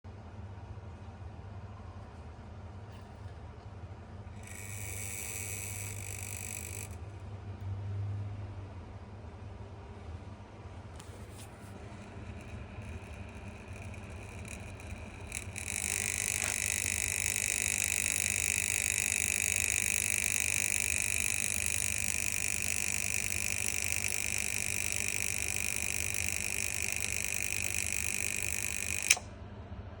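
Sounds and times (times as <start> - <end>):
low hum: 11.0 - 29.3
circuit breaker snapping: 12.8 - 29.3.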